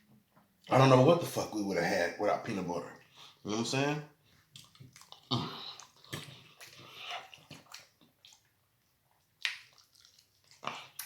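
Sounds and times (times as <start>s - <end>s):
wet chewing smacks: 4.2s - 11.0s.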